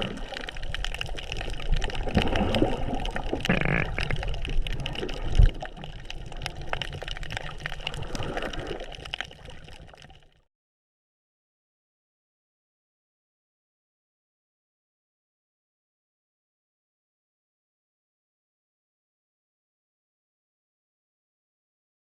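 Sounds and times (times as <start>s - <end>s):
small clicks and crackles: 0.0s - 10.4s
water sloshing and splashing: 0.0s - 10.4s.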